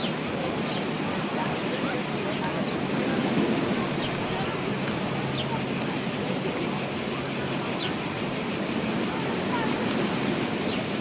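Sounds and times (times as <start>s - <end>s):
insects chirring: 0.0s - 11.0s
ocean surf on a beach: 0.0s - 11.0s.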